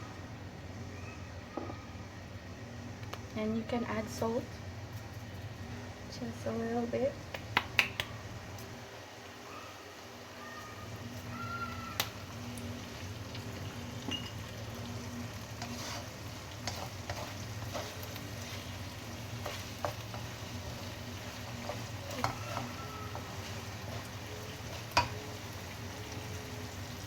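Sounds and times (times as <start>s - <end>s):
stir-fry sizzling in a pan: 8.2s - 27.0s
spatula scraping a pan: 15.4s - 25.3s.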